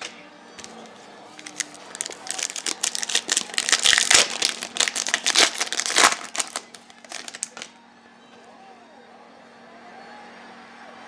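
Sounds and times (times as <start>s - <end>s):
cards and packaging crinkling: 0.0s - 7.7s.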